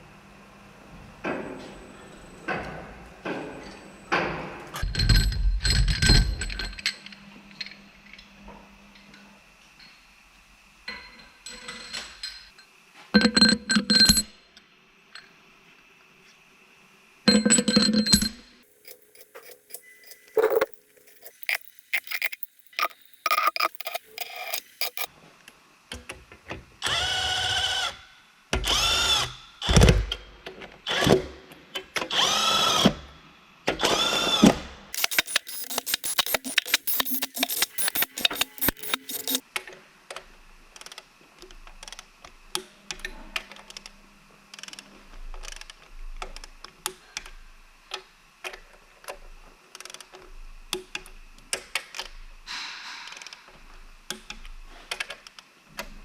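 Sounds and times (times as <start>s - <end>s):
metal parts and tools clanking: 4.8s - 7.8s, 17.3s - 25.1s, 35.0s - 39.4s
power drill spinning: 18.7s - 25.1s, 28.7s - 29.3s, 32.1s - 32.8s, 35.0s - 39.4s.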